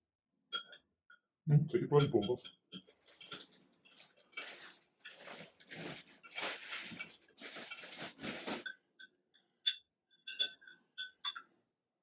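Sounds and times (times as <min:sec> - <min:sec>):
glass clinking: 0:02.0 - 0:03.5, 0:09.0 - 0:11.5.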